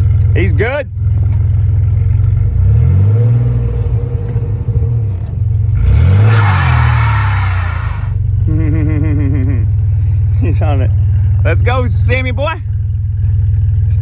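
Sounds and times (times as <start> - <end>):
truck engine revving: 2.3 - 12.1.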